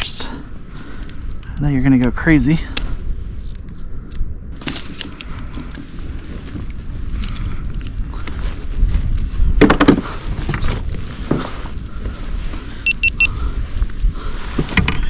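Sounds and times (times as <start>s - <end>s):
knocks and clicks handling fish: 9.6s - 11.4s, 14.6s - 15.0s
quick high beeps: 12.8s - 13.3s.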